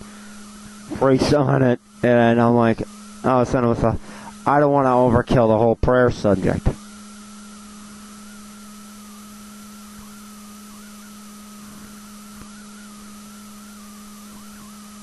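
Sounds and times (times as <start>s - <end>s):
even hiss: 0.0s - 7.0s
steady electrical hum: 0.0s - 15.0s
faint wavering high tone: 6.8s - 15.0s.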